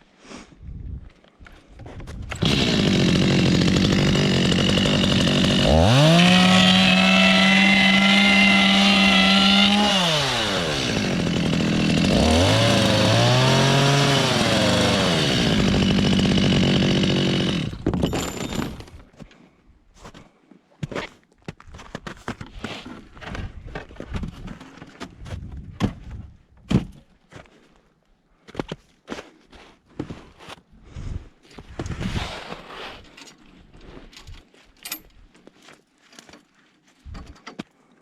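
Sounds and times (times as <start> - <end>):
chainsaw engine revving: 2.3 - 17.8.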